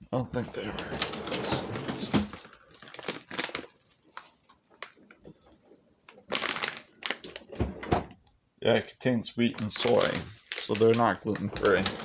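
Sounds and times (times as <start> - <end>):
plastic packaging crinkling: 0.7 - 7.5, 9.5 - 12.0.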